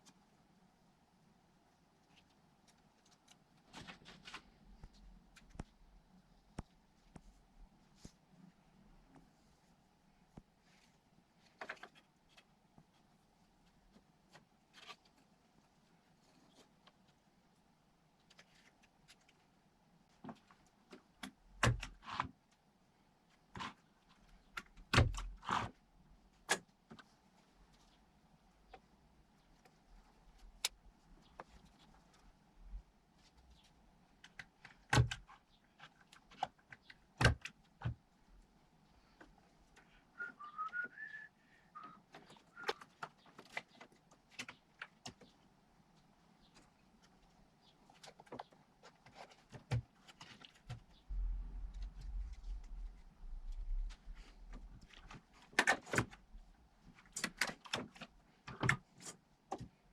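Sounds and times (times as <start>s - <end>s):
person whistling notes: 40.2s - 42.8s.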